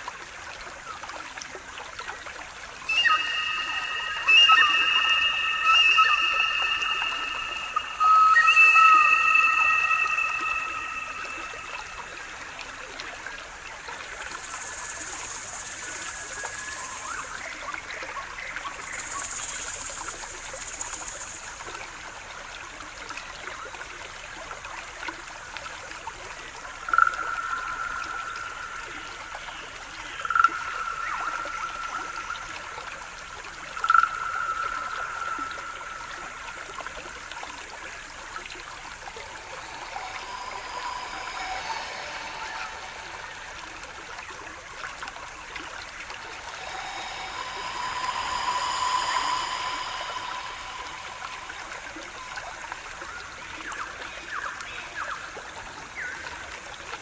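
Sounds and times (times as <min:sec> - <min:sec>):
stream water running: 0:00.0 - 0:57.0
long held notes: 0:38.8 - 0:52.9.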